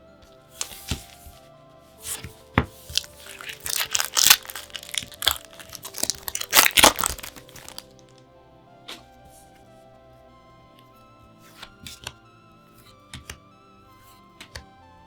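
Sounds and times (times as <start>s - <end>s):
soft background music: 0.0s - 15.0s
card packaging tearing and crinkling: 0.6s - 1.4s, 2.0s - 8.1s.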